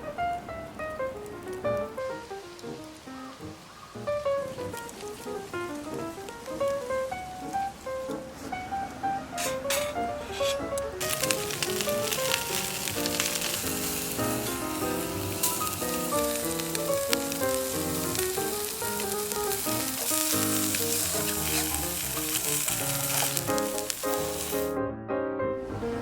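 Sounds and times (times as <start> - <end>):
background music: 0.0 - 26.0
food sizzling in a frying pan: 9.4 - 24.8.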